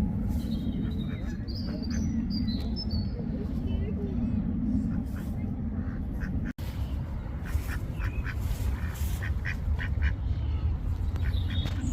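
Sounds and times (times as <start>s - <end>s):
steady low rumble: 0.0s - 11.9s
ducks quacking: 0.8s - 2.2s, 4.9s - 6.5s, 7.4s - 11.9s.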